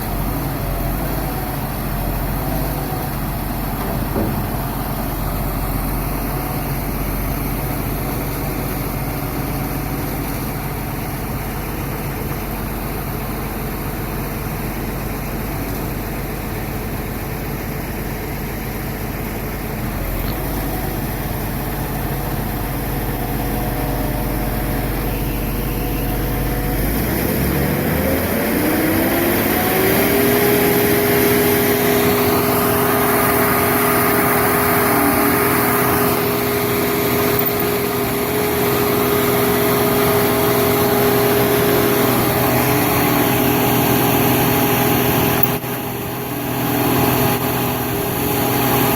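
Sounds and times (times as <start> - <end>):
machine engine running: 19.9 - 48.9.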